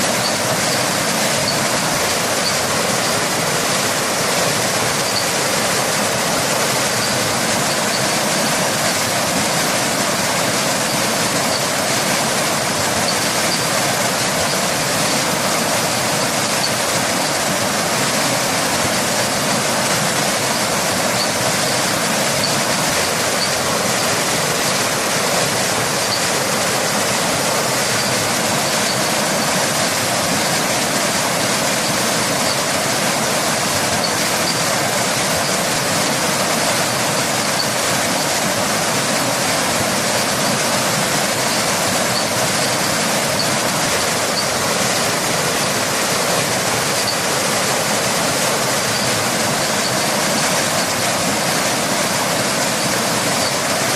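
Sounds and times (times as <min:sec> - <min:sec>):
waterfall rushing: 0:00.0 - 0:53.9.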